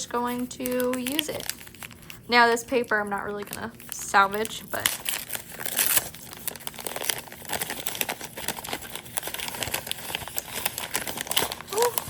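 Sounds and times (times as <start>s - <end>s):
packing paper crinkling: 0.0s - 12.0s.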